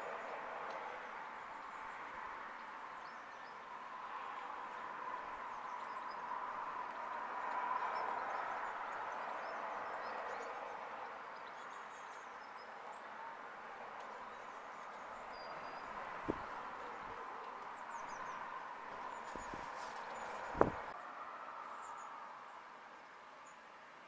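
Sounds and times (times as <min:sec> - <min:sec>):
small birds chirping: 0:13.8 - 0:21.0
low thump: 0:16.2 - 0:16.5, 0:20.4 - 0:20.9.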